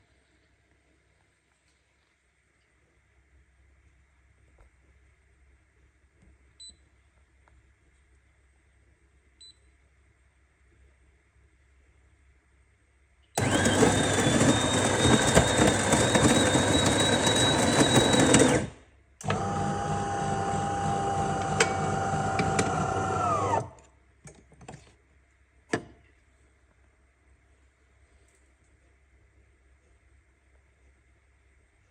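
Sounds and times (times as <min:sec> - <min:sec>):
coffee machine whining: 0:13.4 - 0:23.8.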